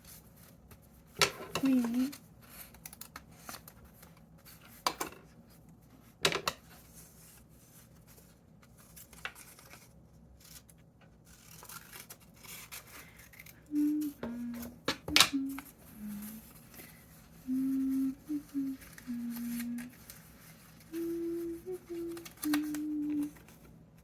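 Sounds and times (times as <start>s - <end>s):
paper rustling and clicks: 0.4s - 5.2s, 8.0s - 17.0s, 18.6s - 24.0s
scissors snipping paper: 1.6s - 3.6s, 11.3s - 14.6s, 18.0s - 23.4s.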